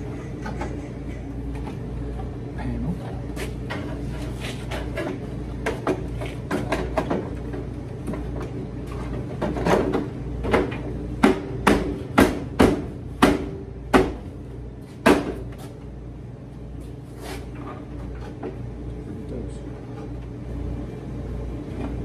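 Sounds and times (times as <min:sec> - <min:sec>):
knocks on sheet-metal cabinet: 0:09.6 - 0:14.2, 0:15.0 - 0:15.4.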